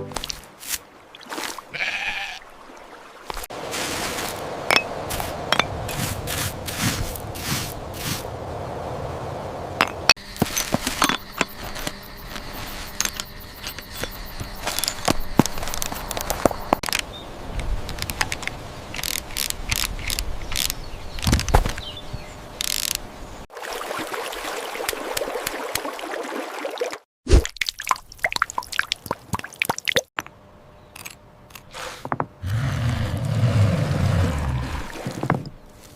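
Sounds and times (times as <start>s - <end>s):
small parts and tools clicking: 10.4s - 17.0s, 17.8s - 21.5s, 22.6s - 23.0s.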